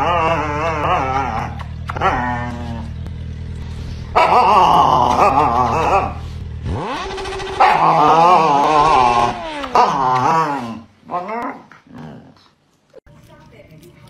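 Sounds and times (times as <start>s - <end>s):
dog howling: 0.0s - 3.0s, 4.1s - 6.2s, 7.3s - 11.7s
low steady hum: 0.0s - 11.4s.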